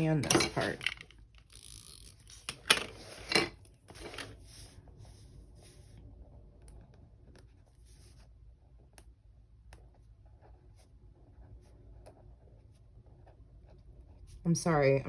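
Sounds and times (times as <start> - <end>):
faint scratching on paper: 3.9 - 15.0.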